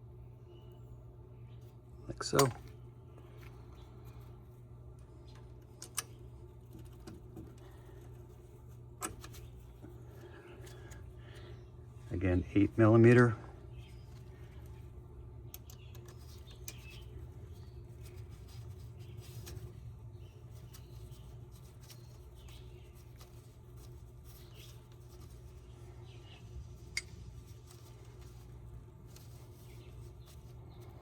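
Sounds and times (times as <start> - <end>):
metal clicks and scrapes of tools: 5.3 - 7.6.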